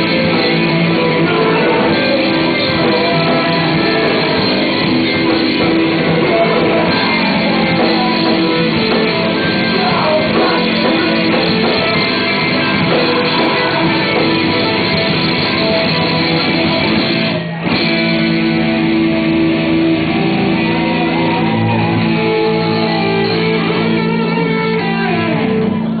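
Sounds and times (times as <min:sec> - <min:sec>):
person singing: 0:00.0 - 0:16.8
live rock band with guitar: 0:00.0 - 0:26.0.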